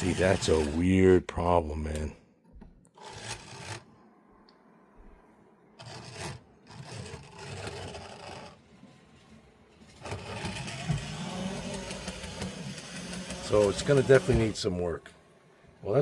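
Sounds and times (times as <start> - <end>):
toy train motor whirring: 0.0 - 1.0, 3.0 - 3.9, 5.8 - 8.6, 10.0 - 14.6.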